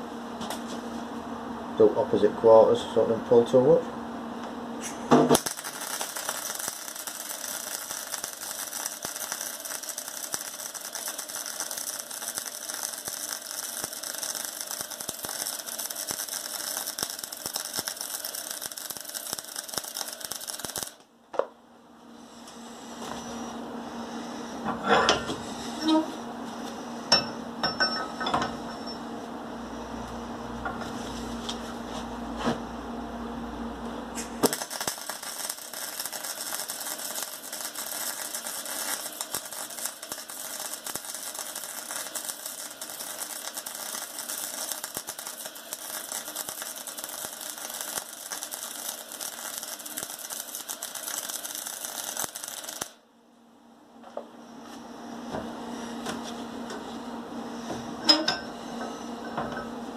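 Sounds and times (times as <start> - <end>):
welding arc crackling sizzle: 4.4 - 21.1, 33.4 - 53.0.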